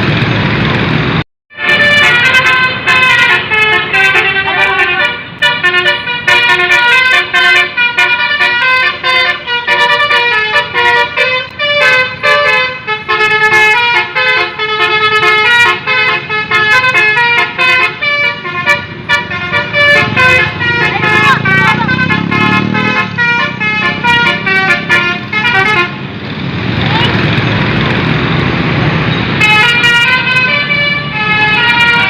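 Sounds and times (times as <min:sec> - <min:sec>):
musical air horn playing tune: 0:01.5 - 0:26.0.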